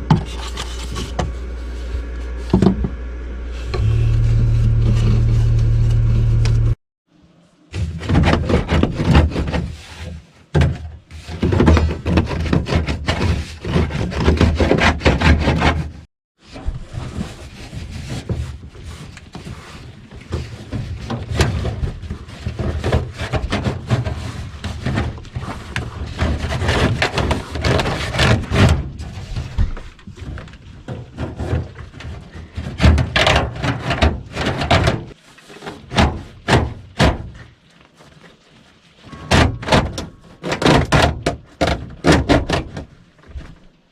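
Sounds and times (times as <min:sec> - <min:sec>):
knocks and clatter of duct hose: 0:16.8 - 0:37.5, 0:39.3 - 0:43.7.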